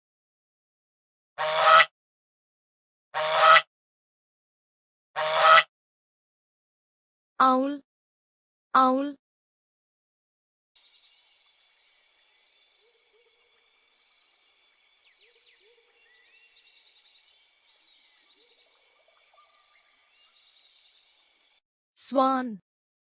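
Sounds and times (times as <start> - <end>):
insects trilling: 10.8 - 21.6
pulsing insect call: 10.8 - 21.6
short chirping calls: 10.8 - 21.6.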